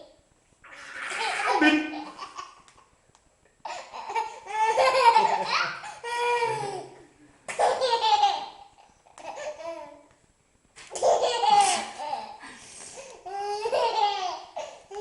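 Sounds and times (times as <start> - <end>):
baby laughing: 0.7 - 2.8, 3.7 - 6.9, 7.5 - 9.9, 10.9 - 12.4, 13.2 - 15.0.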